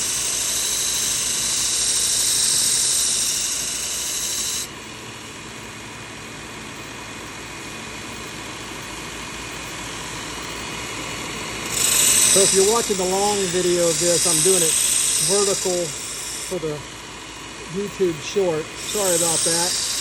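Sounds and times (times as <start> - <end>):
belt sharpener grinding knife blade: 0.0 - 4.7, 11.4 - 16.6, 18.2 - 20.0
sanding belt running: 0.0 - 4.7, 9.8 - 20.0.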